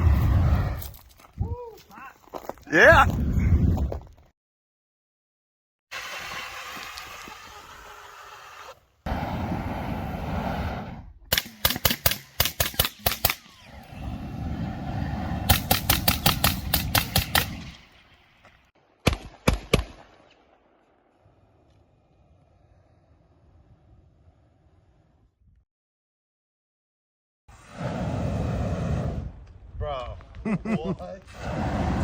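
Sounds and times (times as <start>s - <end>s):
flamethrower jet rushing: 0.0s - 0.9s, 7.7s - 11.2s, 13.6s - 18.0s, 27.5s - 29.5s, 31.2s - 32.0s
sharp loud cracks: 11.3s - 13.6s, 15.4s - 18.0s.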